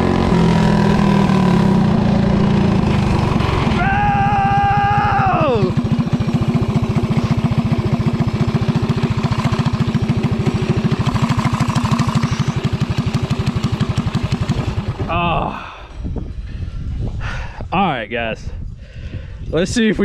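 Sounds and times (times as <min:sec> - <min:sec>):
go-kart engine revving and idling: 0:00.0 - 0:15.7.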